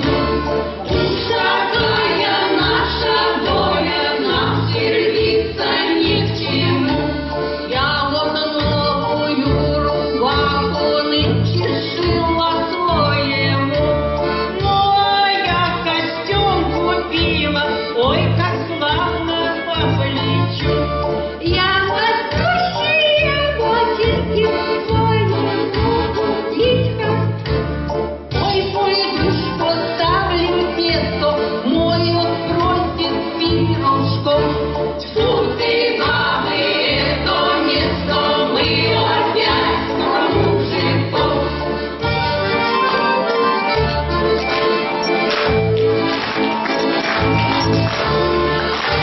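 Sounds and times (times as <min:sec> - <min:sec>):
choir singing: 0:00.0 - 0:07.6, 0:34.4 - 0:42.0
voices singing folk song: 0:00.0 - 0:27.5, 0:28.6 - 0:45.3
instrumental accompaniment with beat: 0:00.0 - 0:49.0.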